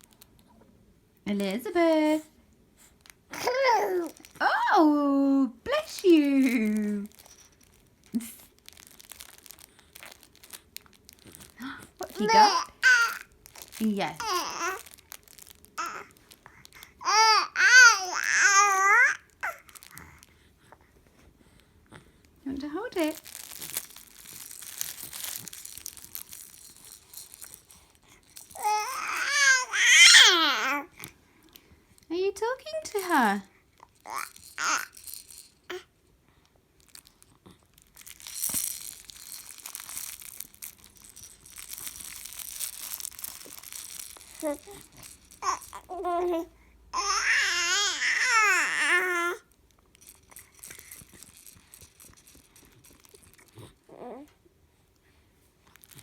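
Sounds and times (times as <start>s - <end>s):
crinkly object crackling: 0.0s - 0.8s, 1.4s - 54.4s, 55.0s - 56.0s
baby's voice: 3.3s - 4.9s, 11.6s - 13.3s, 14.0s - 14.9s, 15.8s - 16.1s, 17.0s - 19.7s, 28.6s - 30.9s, 34.0s - 35.0s, 44.3s - 49.4s, 53.9s - 54.4s.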